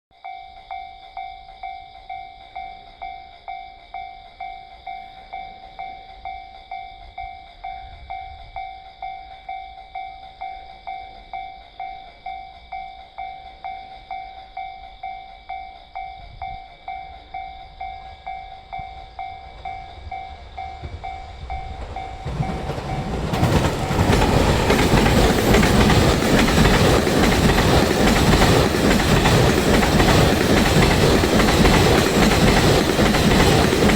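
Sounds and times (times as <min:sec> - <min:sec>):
train wheels rolling over rails: 0:18.7 - 0:33.9.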